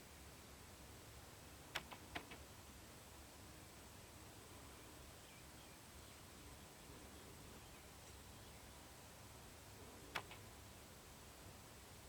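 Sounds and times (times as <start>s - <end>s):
sharp clicks: 1.7s - 2.5s, 10.1s - 10.5s.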